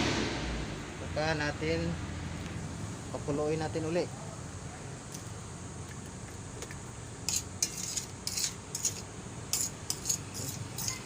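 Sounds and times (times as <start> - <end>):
metal utensil clinking on pot: 7.3 - 11.0.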